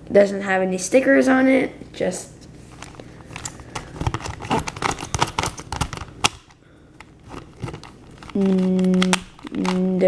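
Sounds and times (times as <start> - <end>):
puzzle cube clicking and scraping: 2.7 - 10.0.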